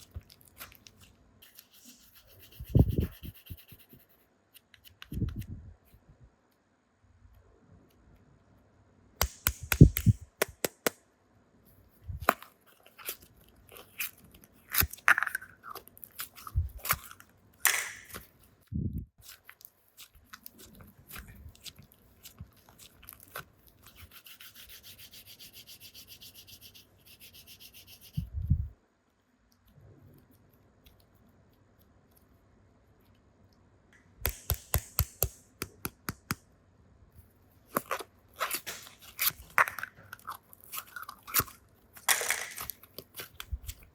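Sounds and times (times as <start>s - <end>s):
sharp clicks and taps: 9.2s - 11.0s, 34.0s - 36.5s
hands handling toys: 37.2s - 43.9s.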